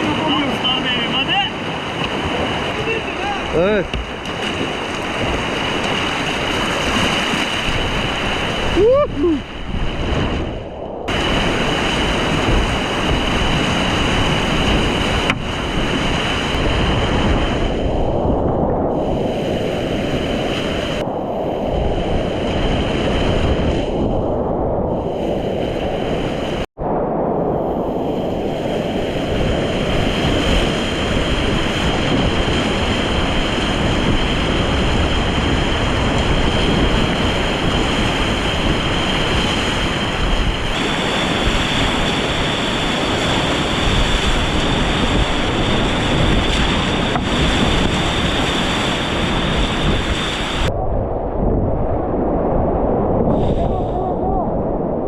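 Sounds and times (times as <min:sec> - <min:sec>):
whitewater rushing: 0:00.0 - 0:18.0, 0:28.6 - 0:50.7.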